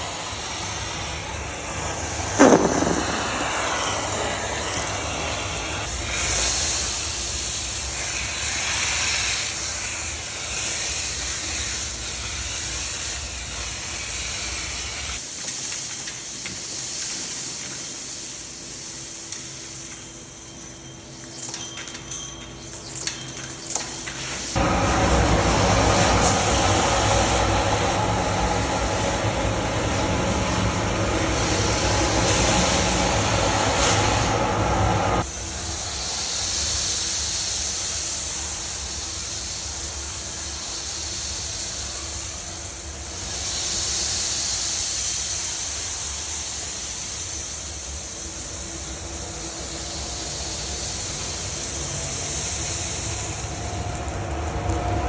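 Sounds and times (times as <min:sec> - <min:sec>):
vacuum system air rush: 0:00.0 - 0:15.3, 0:24.2 - 0:55.0
thin hiss: 0:00.0 - 0:54.4
low hum: 0:02.3 - 0:05.8.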